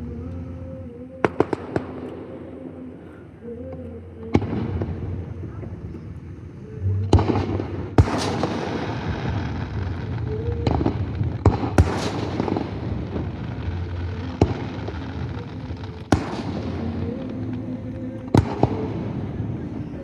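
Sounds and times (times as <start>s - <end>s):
rumble and crackle of fireworks: 0.0s - 20.0s
firework shells bursting: 1.2s - 2.9s, 7.0s - 20.0s.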